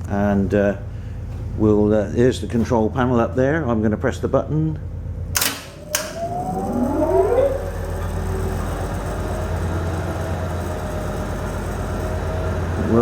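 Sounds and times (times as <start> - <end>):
low hum: 4.9 - 12.9
electric motor whine: 5.6 - 13.0.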